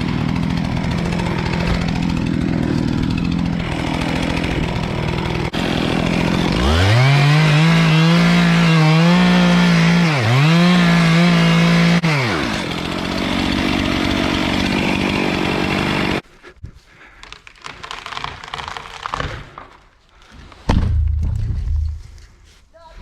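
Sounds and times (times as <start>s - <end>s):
chainsaw running: 0.0s - 16.2s
knocks and rustling: 20.5s - 22.5s.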